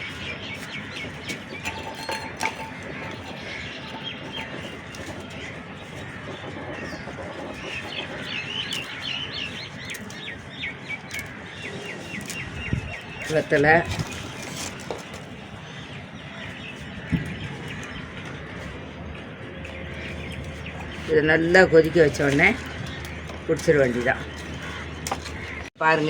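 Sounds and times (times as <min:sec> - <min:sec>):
birds chirping: 0:00.0 - 0:26.0.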